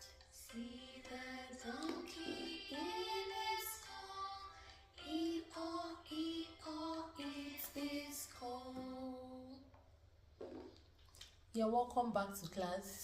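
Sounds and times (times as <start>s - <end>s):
high voice singing children's song: 0.0s - 9.6s.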